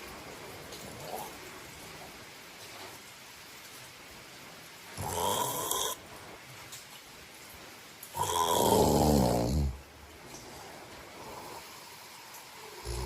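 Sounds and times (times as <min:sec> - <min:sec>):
person snoring: 0:05.0 - 0:06.0, 0:08.2 - 0:09.8, 0:11.2 - 0:13.0.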